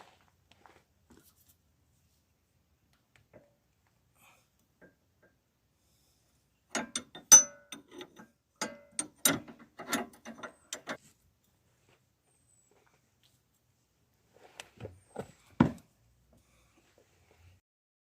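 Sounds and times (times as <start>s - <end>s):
hand tools clicking on metal: 6.7s - 11.0s.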